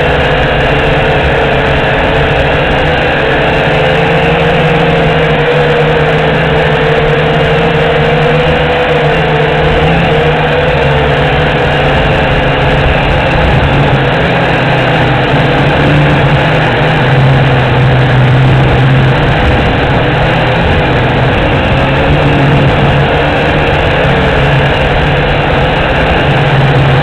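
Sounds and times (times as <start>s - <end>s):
drone propellers humming: 0.0s - 27.0s
wind buffeting microphone: 0.0s - 27.0s.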